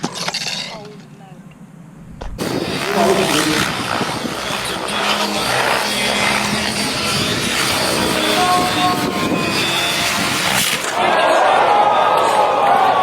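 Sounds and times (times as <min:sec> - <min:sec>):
model helicopter motor and rotor: 0:02.4 - 0:11.1.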